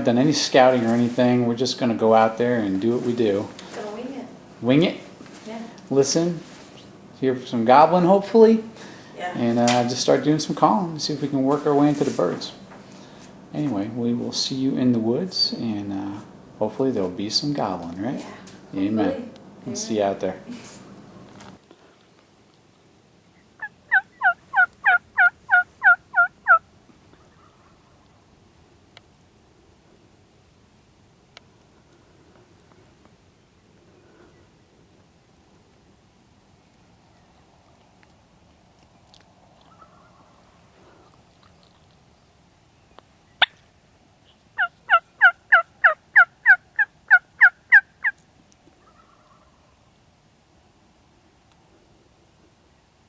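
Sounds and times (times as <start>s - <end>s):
turkey hen yelps: 23.6s - 26.6s, 27.2s - 27.8s, 39.7s - 40.4s, 44.6s - 48.2s, 48.8s - 49.7s.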